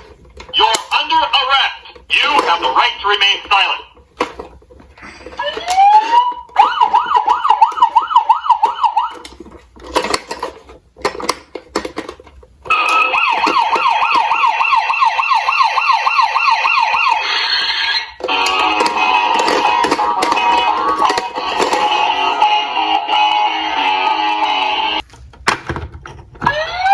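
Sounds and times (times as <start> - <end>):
electronic siren yelping: 5.4 - 9.2, 12.7 - 19.8, 26.5 - 26.9
scattered clicks and knocks: 18.2 - 22.1.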